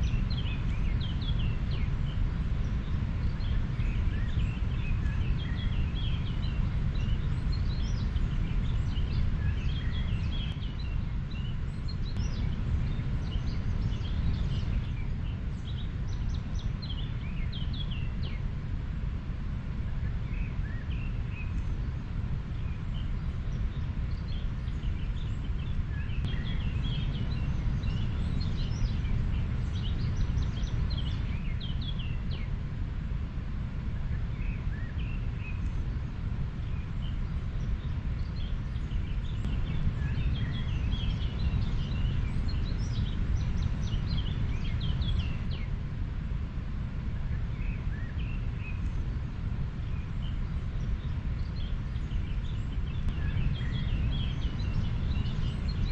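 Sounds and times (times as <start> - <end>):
small birds chirping: 0.0 - 32.9, 33.9 - 55.9.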